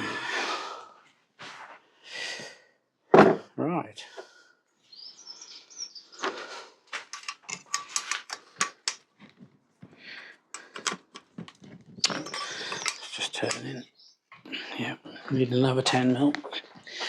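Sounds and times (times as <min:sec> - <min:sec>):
spanner clicking and scraping on bolt: 0:07.1 - 0:09.0, 0:10.5 - 0:11.6, 0:12.2 - 0:13.7.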